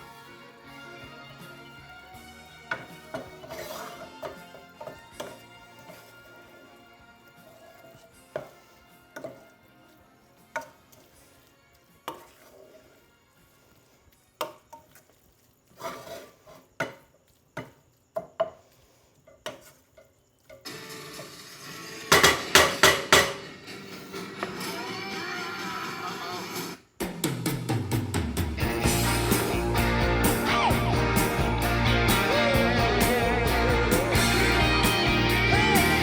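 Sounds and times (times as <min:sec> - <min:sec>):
faint music: 0:00.0 - 0:15.1
utensils knocking on pots and pans: 0:02.7 - 0:05.5, 0:22.1 - 0:23.7.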